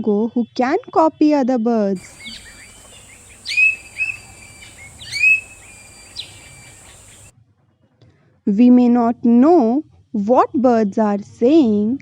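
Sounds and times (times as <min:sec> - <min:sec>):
bird calling: 0:02.0 - 0:07.3
field recording hiss: 0:02.0 - 0:07.3.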